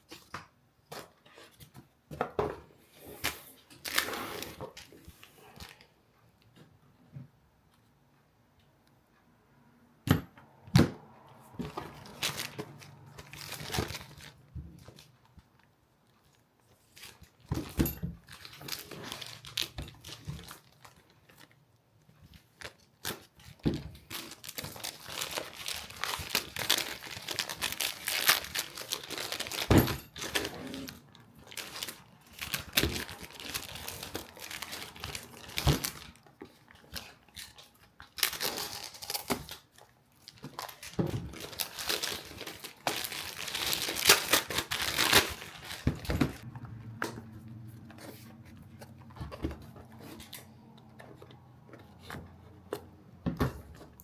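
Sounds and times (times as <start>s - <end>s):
gear crinkling and rustling: 11.4s - 54.0s.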